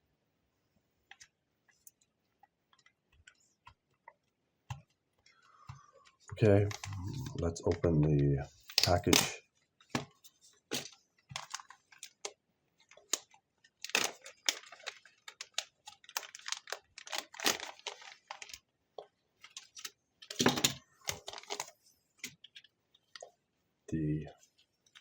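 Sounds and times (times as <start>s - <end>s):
packaging crinkling and tearing: 10.7s - 18.7s, 19.4s - 21.8s.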